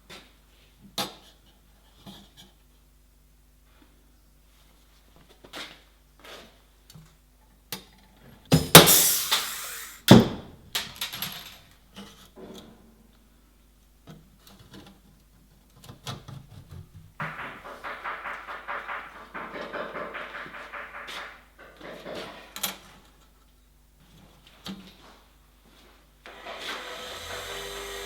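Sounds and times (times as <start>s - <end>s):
sharp knock: 17.2s - 21.8s
loud scraping metal rattle: 17.2s - 22.4s
metal knocks and clatter: 17.2s - 22.8s.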